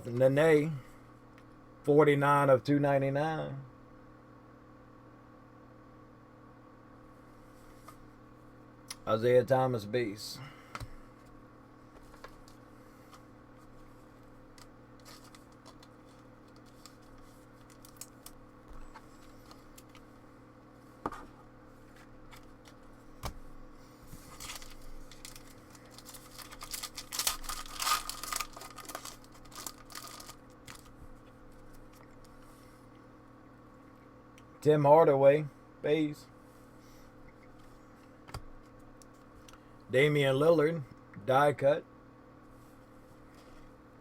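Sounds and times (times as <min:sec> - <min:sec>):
wrapper crinkling and tearing: 0:15.0 - 0:18.4, 0:24.3 - 0:31.0.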